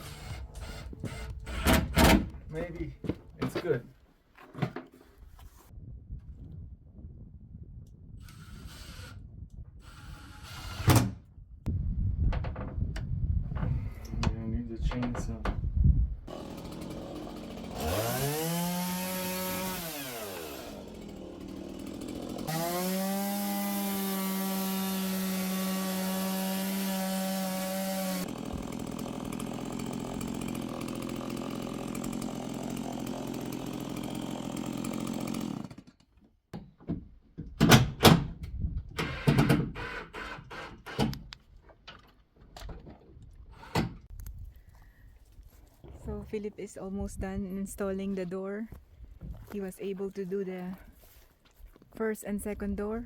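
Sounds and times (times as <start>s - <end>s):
chainsaw revving: 16.3s - 35.9s.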